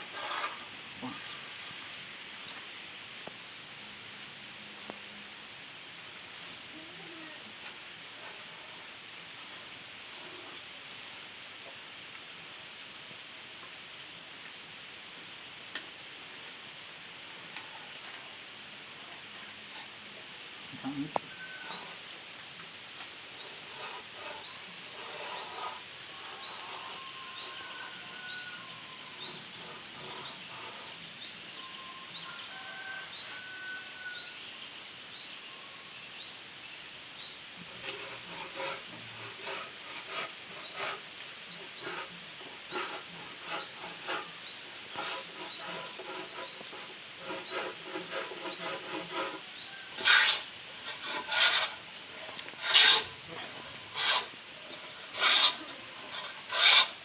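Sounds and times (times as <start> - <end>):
hand plane shaving wood: 23.4 - 27.7, 37.8 - 41.0, 41.8 - 57.0.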